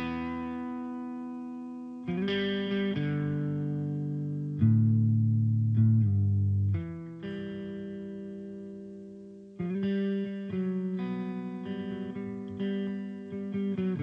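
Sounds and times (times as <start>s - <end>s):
guitar chords and picked notes: 0.0s - 14.0s.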